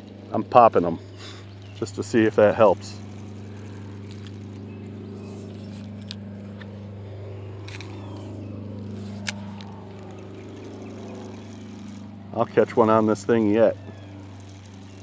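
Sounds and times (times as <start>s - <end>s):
low engine hum: 0.0s - 15.0s.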